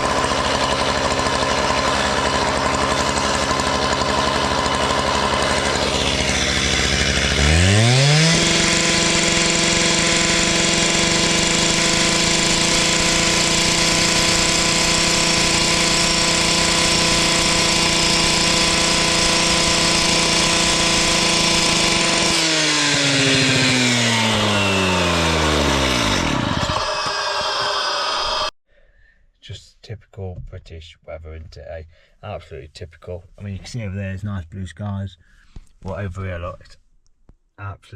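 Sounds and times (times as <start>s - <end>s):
petrol cut-off saw revving: 0.0s - 28.6s.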